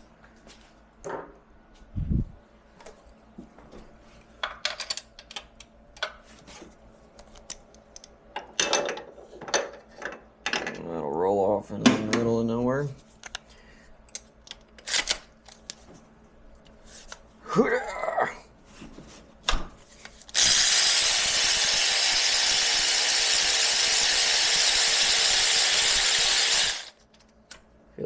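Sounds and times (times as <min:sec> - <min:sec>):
power tool motor running: 0:20.3 - 0:27.0.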